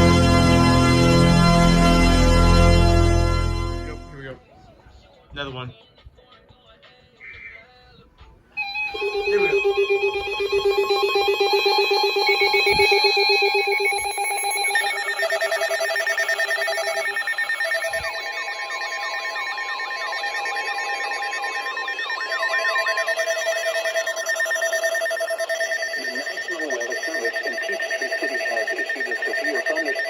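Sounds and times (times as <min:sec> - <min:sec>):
pulsing electronic alarm beeps: 0:00.0 - 0:04.2, 0:08.6 - 0:30.0
sweeping siren-like tones: 0:00.0 - 0:04.2, 0:08.6 - 0:30.0
steady single tone: 0:08.6 - 0:28.2.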